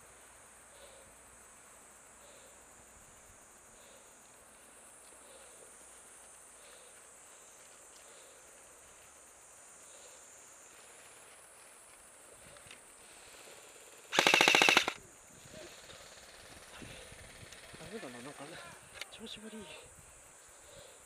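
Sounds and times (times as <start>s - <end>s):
soft repeating calls: 13.6s - 16.5s.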